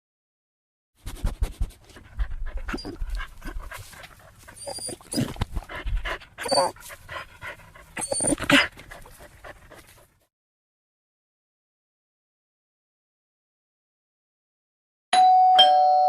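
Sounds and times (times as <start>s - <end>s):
dog panting: 1.1s - 10.3s.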